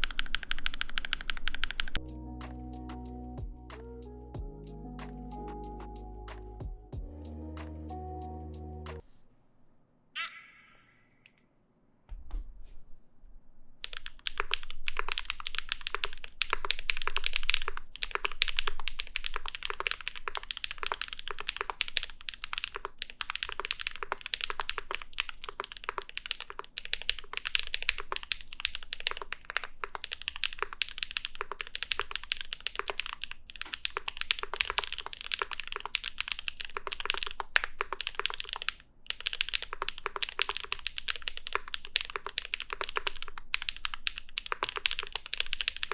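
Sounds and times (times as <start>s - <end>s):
mechanical keyboard typing: 0.0s - 2.0s, 13.8s - 45.9s.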